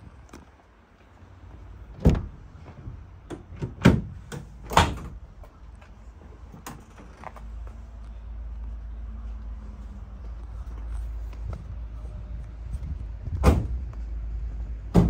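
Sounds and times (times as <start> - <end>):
low steady hum: 0.0 - 15.0
van doors clunking shut: 1.9 - 5.5, 13.3 - 13.9.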